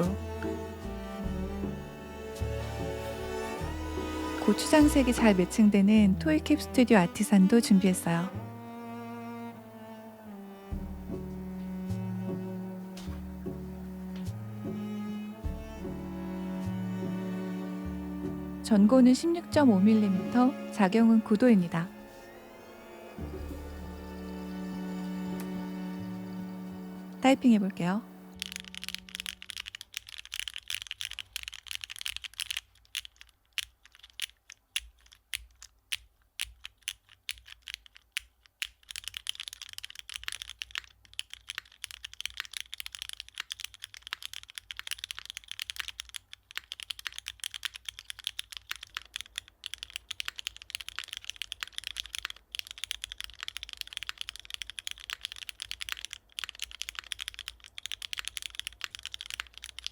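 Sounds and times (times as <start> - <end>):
mechanical keyboard typing: 28.3 - 59.9.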